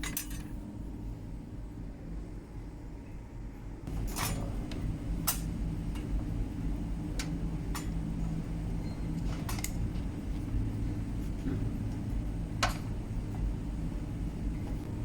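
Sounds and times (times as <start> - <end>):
steady low rumble: 0.0 - 15.0.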